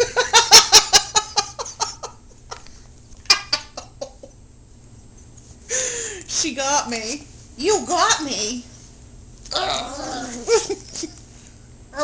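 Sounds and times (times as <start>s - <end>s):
woman laughing: 0.0s - 2.6s, 3.2s - 4.4s, 10.4s - 11.2s.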